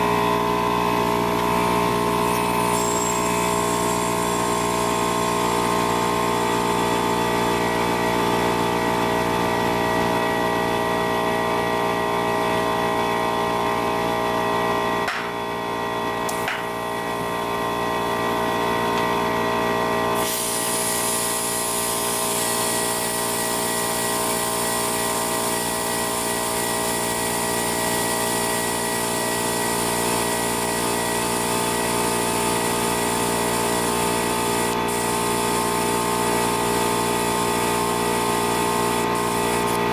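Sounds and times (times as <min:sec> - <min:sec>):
motor droning hum with whine: 0:00.0 - 0:09.2.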